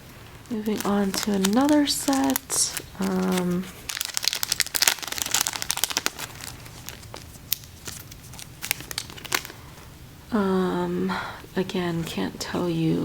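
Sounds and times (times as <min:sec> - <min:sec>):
wrapping crinkling and crackling: 0:00.0 - 0:10.0.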